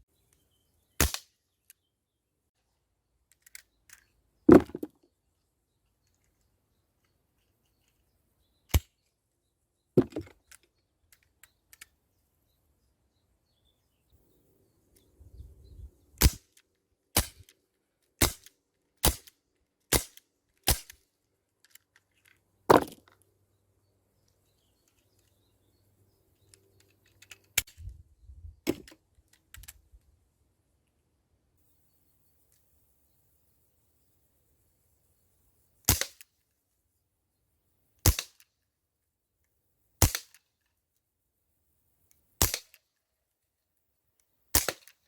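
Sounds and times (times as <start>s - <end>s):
bb revolver firing: 38.1s - 38.4s, 40.0s - 40.4s, 44.6s - 44.9s.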